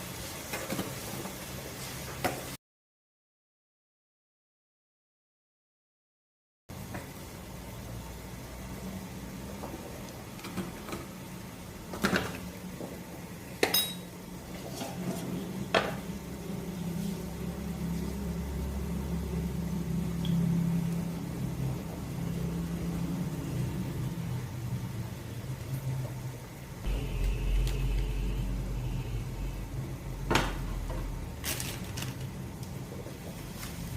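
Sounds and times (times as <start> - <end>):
metal utensils clinking on dish: 13.6 - 14.1
steady low hum: 26.8 - 31.4.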